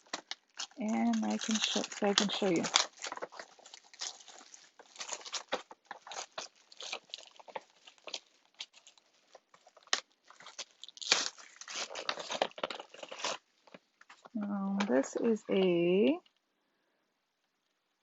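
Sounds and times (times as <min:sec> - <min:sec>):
packaging crinkling and tearing: 0:00.0 - 0:15.8.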